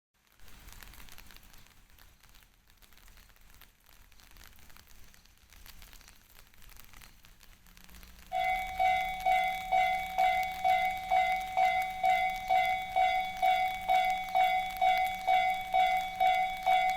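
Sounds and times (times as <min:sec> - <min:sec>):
faint background noise: 0:00.2 - 0:16.9
level crossing electronic bell: 0:08.4 - 0:16.9.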